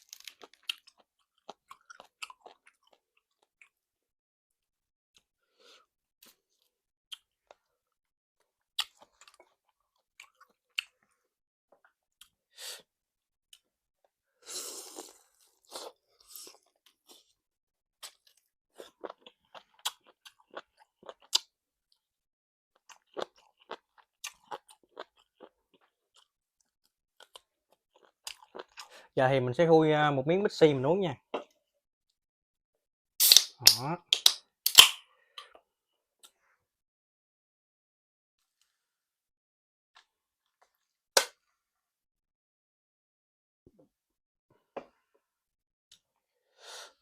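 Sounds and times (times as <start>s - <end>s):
crisp crunches and clicks: 0.0s - 0.9s.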